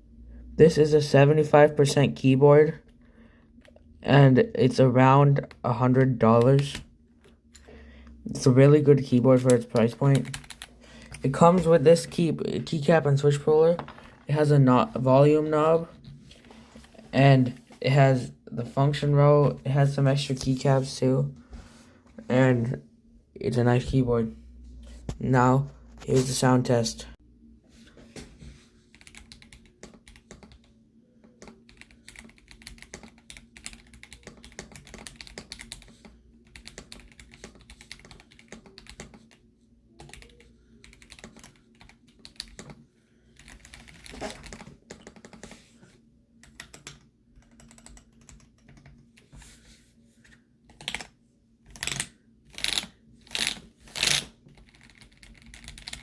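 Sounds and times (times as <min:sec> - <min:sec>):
mechanical keyboard typing: 0:09.3 - 0:12.0, 0:28.9 - 0:30.7, 0:31.3 - 0:39.4, 0:40.0 - 0:42.8, 0:43.4 - 0:45.5, 0:46.4 - 0:49.0, 0:50.7 - 0:51.1, 0:51.7 - 0:56.0.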